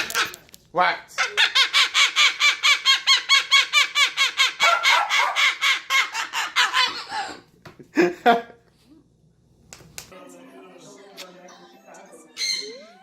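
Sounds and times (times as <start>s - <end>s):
parrot rapid pitched calls: 1.2s - 7.4s.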